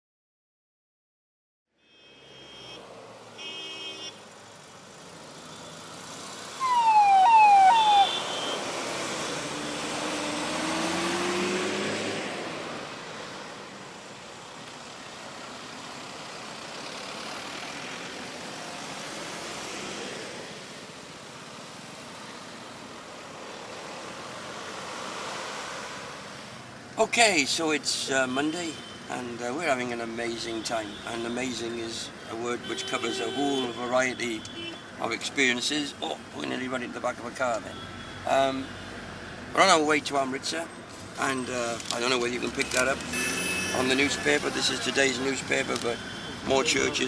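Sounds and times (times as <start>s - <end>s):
short horn beep: 1.8s - 2.8s, 7.7s - 8.6s, 43.1s - 43.9s
road noise: 1.9s - 47.0s
falling siren whoops: 6.6s - 8.6s
vehicle engine rising in pitch: 6.6s - 12.4s.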